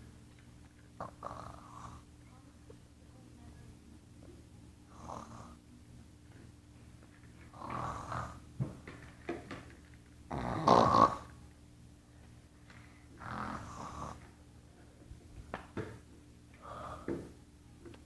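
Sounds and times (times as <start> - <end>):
person fake snoring: 1.0 - 2.1, 4.9 - 5.6, 7.5 - 8.4, 10.3 - 11.3, 13.2 - 14.2.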